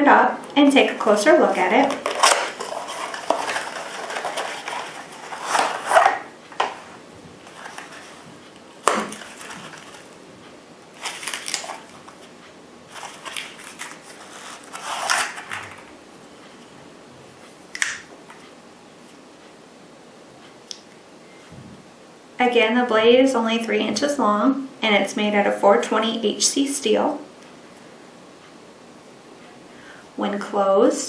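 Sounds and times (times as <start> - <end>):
packaging rustling and scraping: 1.4 - 10.2, 11.0 - 15.9.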